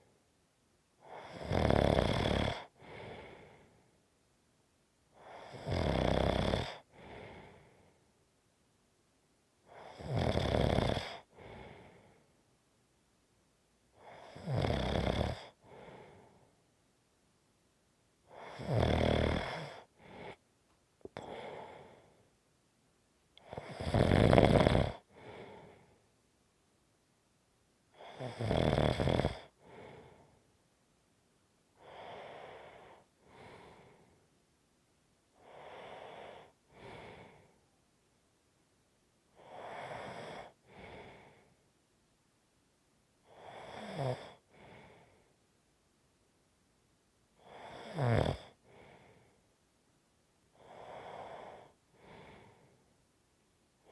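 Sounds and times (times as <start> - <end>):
person snoring: 1.1 - 3.2, 5.2 - 7.5, 9.8 - 11.7, 14.0 - 15.8, 18.3 - 20.4, 23.4 - 25.7, 28.0 - 30.0, 43.4 - 44.7, 47.4 - 48.6.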